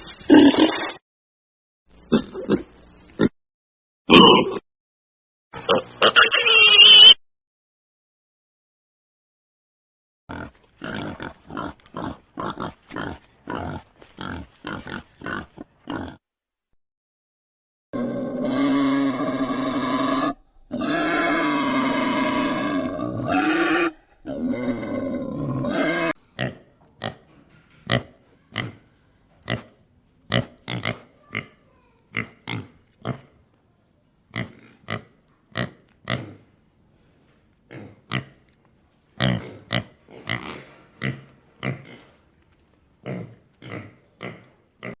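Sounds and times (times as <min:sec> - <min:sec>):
pig loud pitched calls: 0:05.6 - 0:07.2, 0:18.0 - 0:27.2
pig grunts: 0:10.3 - 0:16.2, 0:29.5 - 0:33.4, 0:34.3 - 0:36.5, 0:37.7 - 0:38.4, 0:39.2 - 0:42.2, 0:43.0 - 0:45.0.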